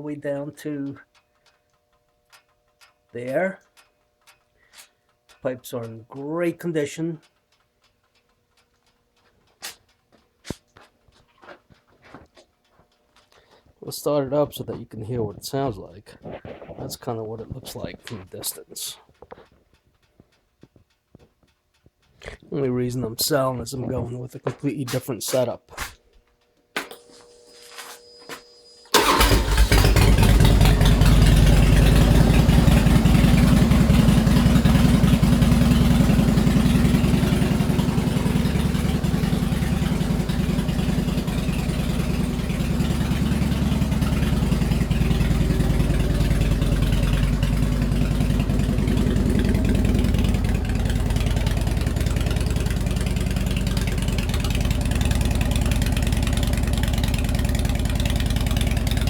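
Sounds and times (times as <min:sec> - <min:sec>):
motorcycle engine starting and idling: 0:26.8 - 0:59.0.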